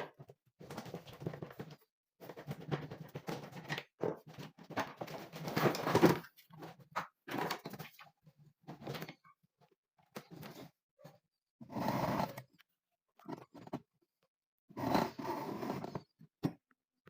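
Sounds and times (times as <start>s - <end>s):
plastic and metal parts clattering: 0.0s - 9.4s.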